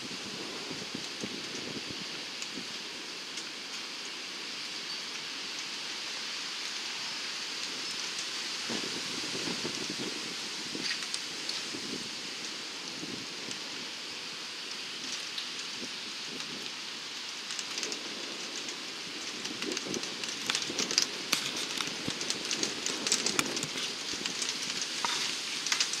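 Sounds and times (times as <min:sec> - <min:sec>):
rain falling: 0:00.0 - 0:26.0
hailstones striking a surface: 0:14.8 - 0:26.0.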